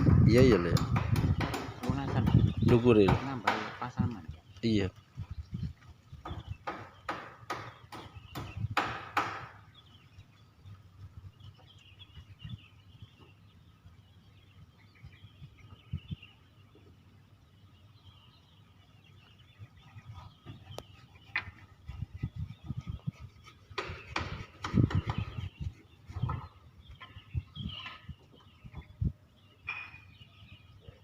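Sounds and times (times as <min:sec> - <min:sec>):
sharp knocks: 0:00.0 - 0:04.0, 0:06.2 - 0:09.6, 0:23.8 - 0:25.5
faint bird chirping: 0:00.0 - 0:31.0.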